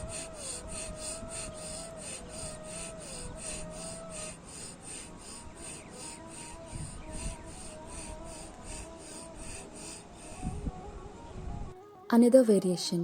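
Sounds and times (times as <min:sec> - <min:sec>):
rapid forced nasal breathing: 0:00.0 - 0:11.7
soft instrumental music: 0:05.9 - 0:13.0.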